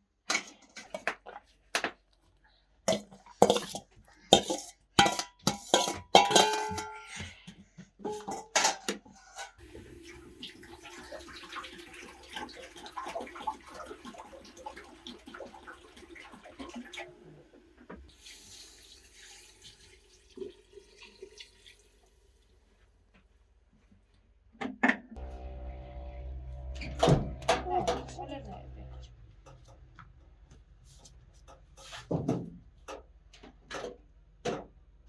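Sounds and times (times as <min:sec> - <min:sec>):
water pouring and splashing: 0:09.6 - 0:22.7.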